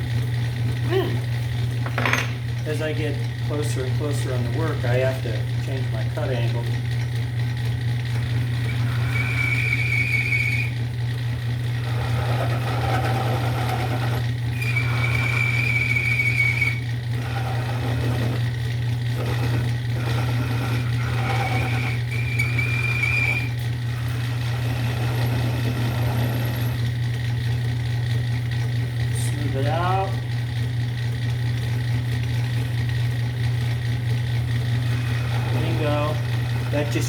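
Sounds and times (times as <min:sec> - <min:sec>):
lathe humming: 0:00.0 - 0:37.0
high-pitched cutting tool whine: 0:08.2 - 0:26.9, 0:34.6 - 0:37.0.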